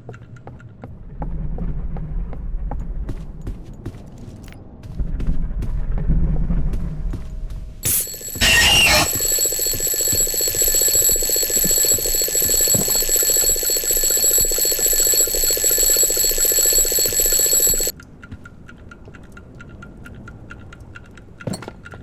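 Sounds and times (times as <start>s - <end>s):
alarm clock ringing: 7.8s - 17.9s
clock ticking: 7.8s - 17.9s.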